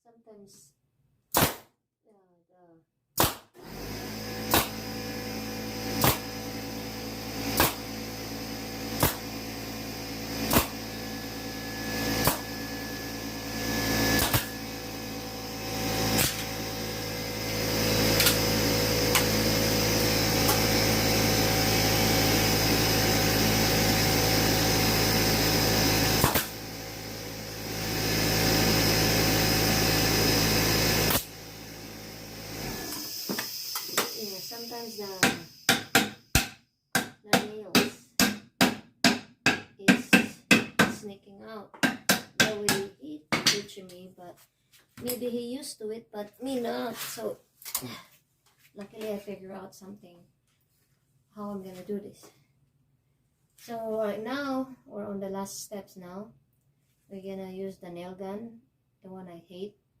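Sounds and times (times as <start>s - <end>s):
staple gun firing into wood: 3.2s - 3.5s, 4.5s - 4.8s, 6.0s - 6.3s, 7.6s - 7.9s, 9.0s - 9.3s, 10.5s - 10.8s, 12.2s - 12.5s, 14.2s - 14.5s, 26.2s - 26.6s
motor humming: 3.6s - 36.0s.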